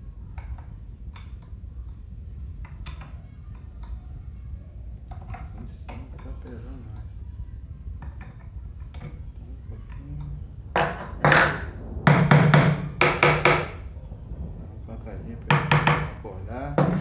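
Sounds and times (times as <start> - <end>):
faint clicks: 0.3 - 4.2, 5.0 - 7.3
sharp hammer-like knocks: 10.8 - 13.8, 15.5 - 16.1.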